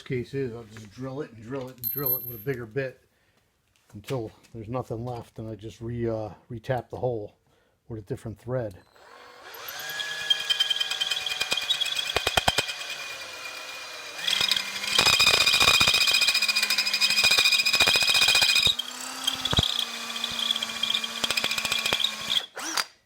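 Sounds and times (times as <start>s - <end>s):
power drill whine: 8.8s - 23.0s.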